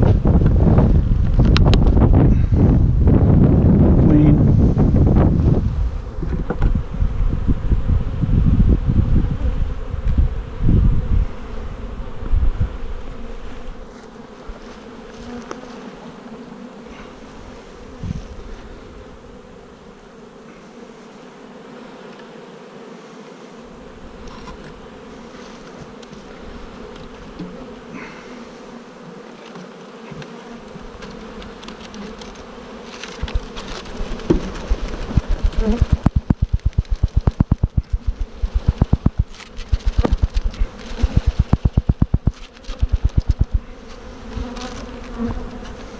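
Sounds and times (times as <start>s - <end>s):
honeybees buzzing: 0.0s - 45.9s.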